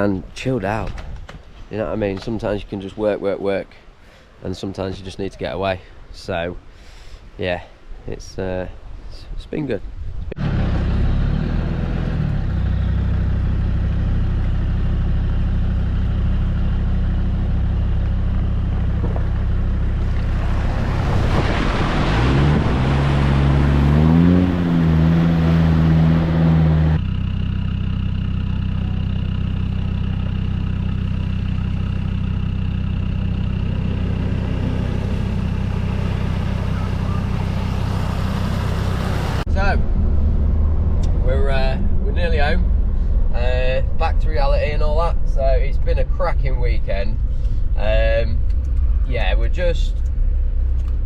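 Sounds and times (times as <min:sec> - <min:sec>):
road noise rushing: 0:09.8 - 0:27.1, 0:29.5 - 0:51.0
car engine droning: 0:10.3 - 0:51.0.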